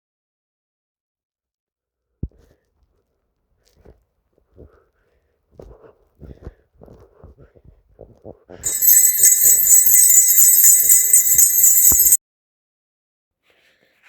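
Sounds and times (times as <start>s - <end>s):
jingle bells shaking: 8.6s - 12.2s.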